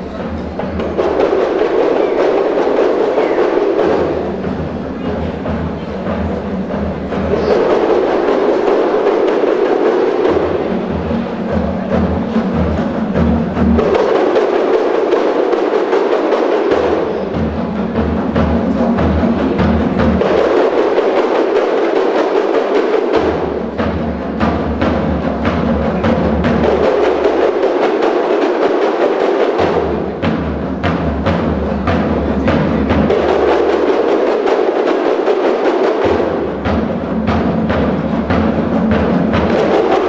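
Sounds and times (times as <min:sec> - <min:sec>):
deep thumping beat: 0:00.0 - 0:14.6
fast hand drumming: 0:00.0 - 0:40.0.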